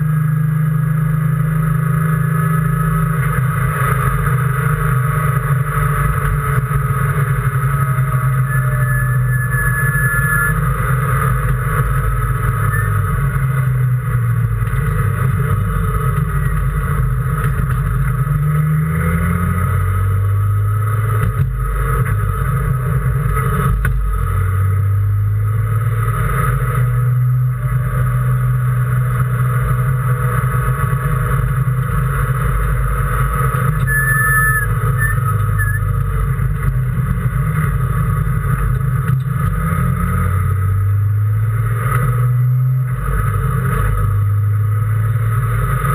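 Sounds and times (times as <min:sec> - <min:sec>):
race car engine shifting gears: 0:31.3 - 0:39.6.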